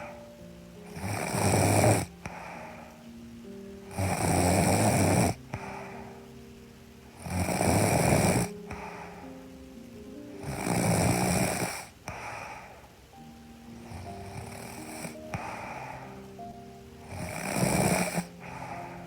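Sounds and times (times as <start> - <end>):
soft background music: 0.0 - 19.0
woman snoring: 0.9 - 2.9, 3.9 - 6.2, 7.1 - 9.3, 10.4 - 12.7, 13.8 - 19.0.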